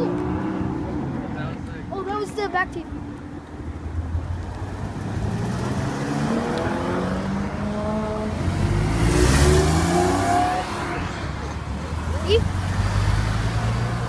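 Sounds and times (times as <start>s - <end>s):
sports car engine revving: 4.6s - 14.0s.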